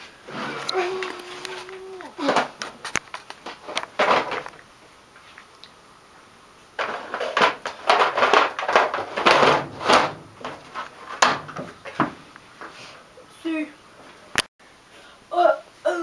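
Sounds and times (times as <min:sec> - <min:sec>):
handling clatter and knocks: 0:00.4 - 0:04.6, 0:06.8 - 0:12.3.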